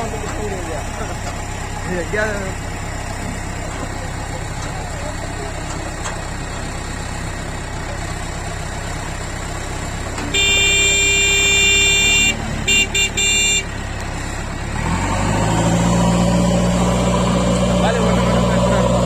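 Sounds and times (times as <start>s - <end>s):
tractor diesel engine idling: 0.0s - 19.0s
vehicle horn blasts and toots: 10.2s - 13.8s.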